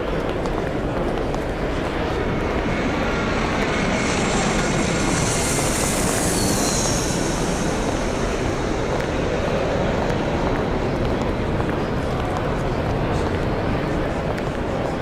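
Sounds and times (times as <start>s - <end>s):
high hiss of something passing: 3.6s - 10.4s.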